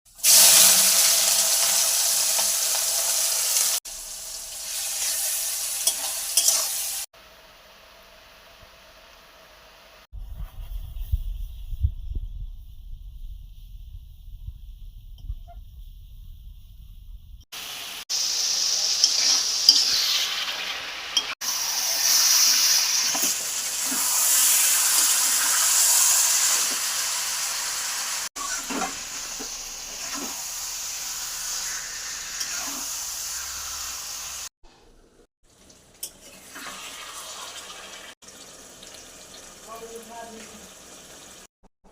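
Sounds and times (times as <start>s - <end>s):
oil sizzling in a pan: 0.1s - 10.1s, 17.5s - 34.5s, 35.5s - 41.5s.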